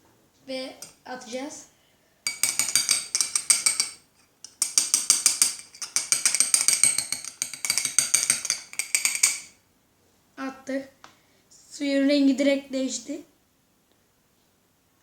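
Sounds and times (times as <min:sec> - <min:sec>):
metal spoon clinking in container: 0:02.3 - 0:09.6.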